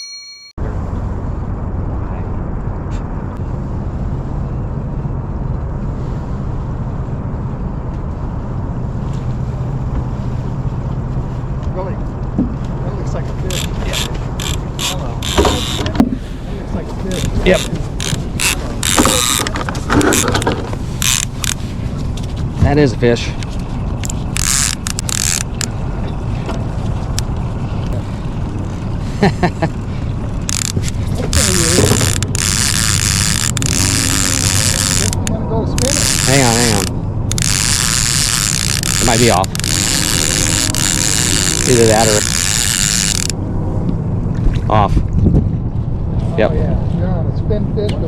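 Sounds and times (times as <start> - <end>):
boat motor humming: 0.6 - 48.0
wind on microphone: 30.1 - 35.2, 35.8 - 47.9.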